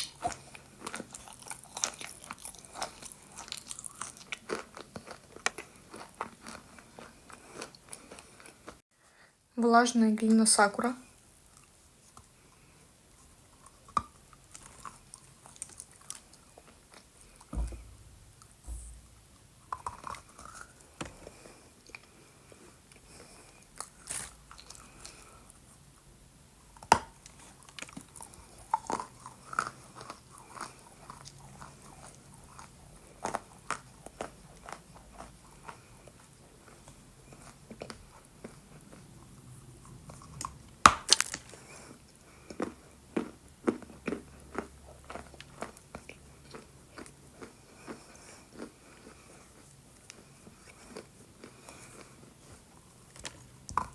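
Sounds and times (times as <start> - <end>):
chewing wet clay: 0.0 - 8.8, 27.2 - 53.9.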